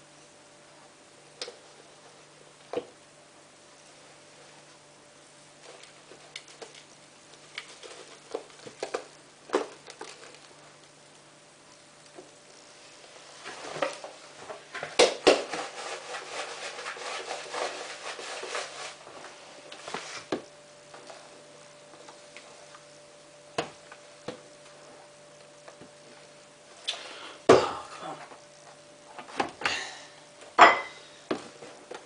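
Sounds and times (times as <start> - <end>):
faint steady hum: 0.0 - 32.0
plastic containers rustling: 5.6 - 10.7.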